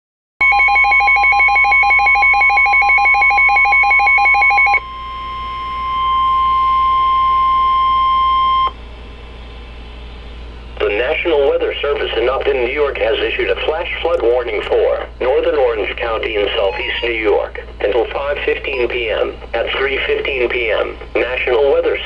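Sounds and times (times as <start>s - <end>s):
pulsing electronic warning tone: 0.4s - 10.6s, 16.3s - 20.2s
steady warning tone: 0.4s - 22.0s.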